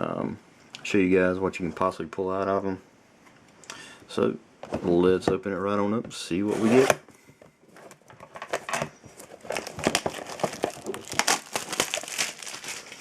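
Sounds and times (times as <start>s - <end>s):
plastic wrapping crinkling and tearing: 8.5s - 13.0s.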